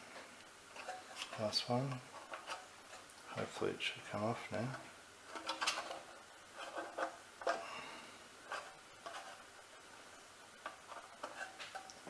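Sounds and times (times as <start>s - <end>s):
plastic parts clicking and knocking: 4.6s - 7.6s.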